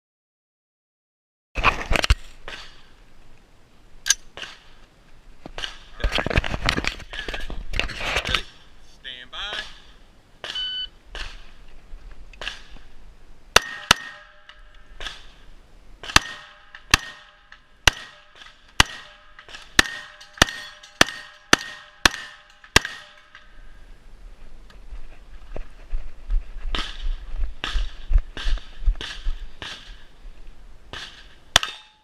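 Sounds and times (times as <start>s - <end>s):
gunshots: 9.5s - 11.5s, 12.4s - 12.8s, 13.6s - 15.4s, 16.0s - 23.3s
ringing tone: 10.6s - 10.9s.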